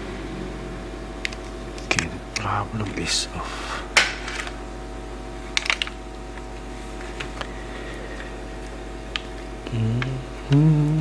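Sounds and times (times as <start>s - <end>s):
electrical hum: 0.0s - 11.0s
person humming: 9.6s - 11.0s.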